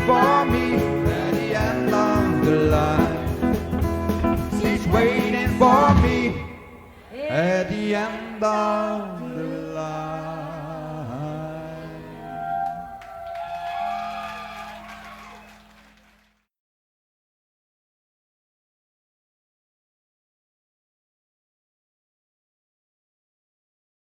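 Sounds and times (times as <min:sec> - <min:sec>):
person singing: 0:00.0 - 0:03.7, 0:04.3 - 0:13.0
country band playing: 0:00.0 - 0:08.3.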